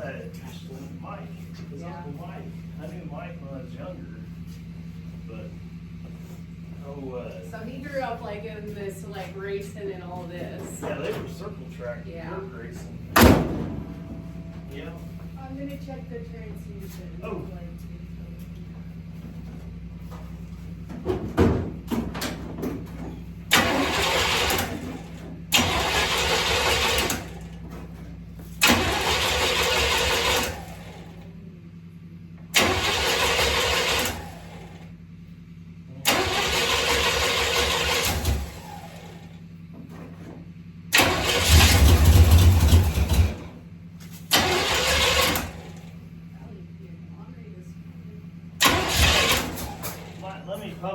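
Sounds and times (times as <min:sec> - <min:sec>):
starter cranking engine: 0:21.8 - 0:31.3, 0:32.5 - 0:34.9, 0:36.0 - 0:39.4, 0:40.9 - 0:43.6, 0:44.2 - 0:46.1, 0:48.5 - 0:50.5.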